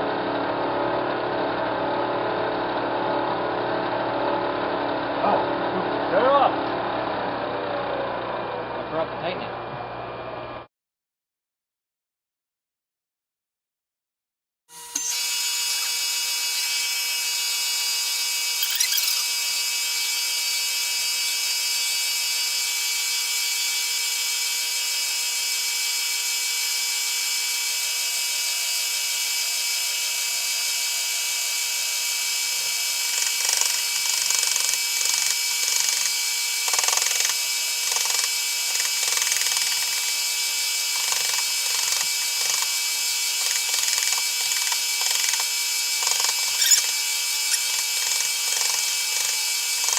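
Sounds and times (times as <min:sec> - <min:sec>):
milling machine whining: 0:00.0 - 0:10.6, 0:14.7 - 0:49.9
rasping wood cutting: 0:14.7 - 0:49.9.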